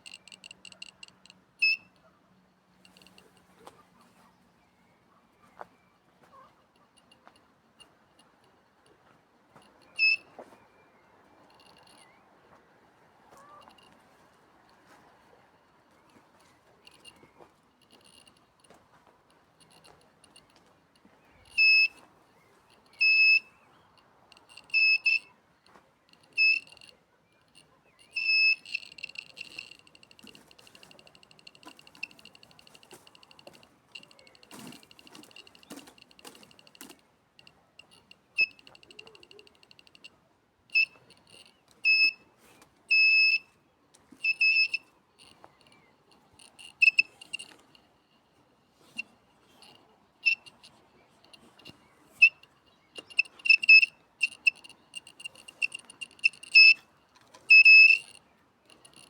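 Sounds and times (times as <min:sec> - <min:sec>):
high-pitched electronic beeps: 0:00.0 - 0:01.8, 0:28.1 - 0:35.6, 0:44.2 - 0:44.8, 0:46.4 - 0:47.5, 0:53.0 - 0:56.8, 0:57.5 - 0:58.2
metal detector beeping: 0:00.0 - 0:02.1, 0:02.8 - 0:03.8, 0:09.6 - 0:12.2, 0:13.4 - 0:14.0, 0:15.9 - 0:18.8, 0:21.2 - 0:25.4, 0:26.1 - 0:42.3, 0:42.9 - 0:43.5, 0:44.1 - 0:59.0.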